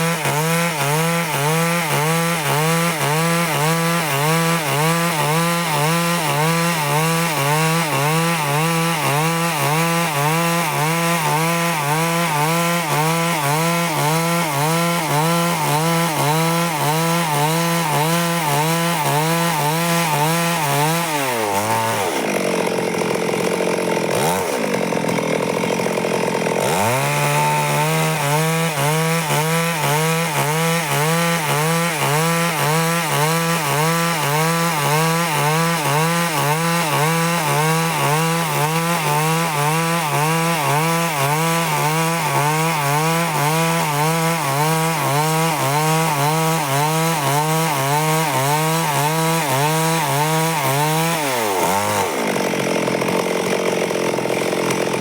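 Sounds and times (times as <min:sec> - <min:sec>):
chainsaw sawing through log: 0:00.0 - 0:55.0.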